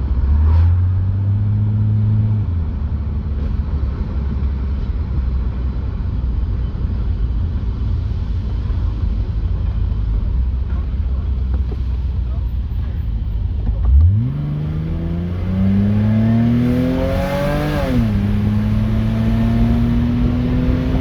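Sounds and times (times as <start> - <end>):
car engine running: 1.1 - 21.0.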